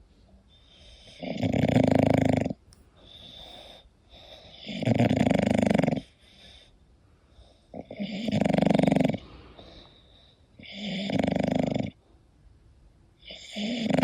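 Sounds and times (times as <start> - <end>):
dog breathing softly: 0.0 - 12.2
dog snoring: 0.5 - 6.7, 7.5 - 10.0, 10.6 - 12.0, 13.2 - 14.0.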